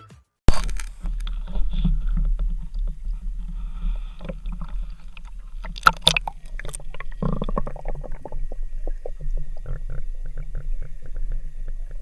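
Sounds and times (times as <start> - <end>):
muffled water sounds: 0.5 - 12.0
steady low rumble: 0.5 - 12.0.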